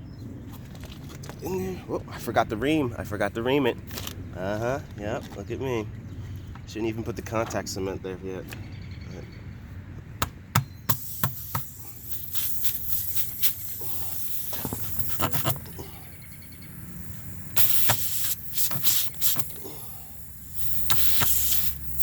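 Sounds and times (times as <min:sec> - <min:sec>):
sharp clicks and knocks: 0:10.2 - 0:11.7
reamer rasping against rubber: 0:10.9 - 0:16.3, 0:17.0 - 0:22.0.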